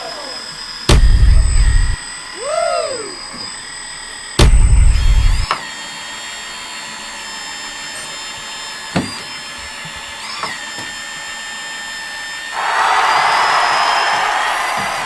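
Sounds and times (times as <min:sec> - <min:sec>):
electric hydraulic pump whining: 0:00.0 - 0:05.6
loud low rumble: 0:00.9 - 0:02.0, 0:04.4 - 0:05.5.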